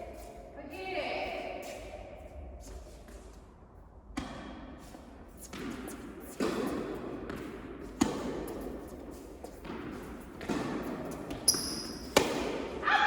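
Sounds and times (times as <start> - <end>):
shoe squeak on court: 11.4 - 12.2.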